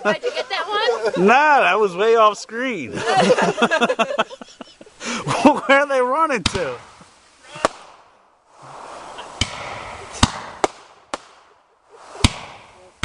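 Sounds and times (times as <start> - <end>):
fireworks bangs: 6.4 - 13.0
hissing crackle of shells: 6.4 - 13.0.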